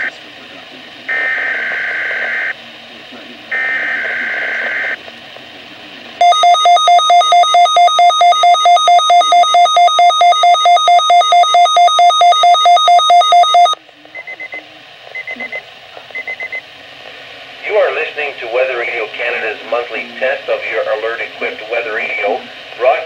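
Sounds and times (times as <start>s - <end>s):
loud electronic beeping: 6.2s - 13.8s.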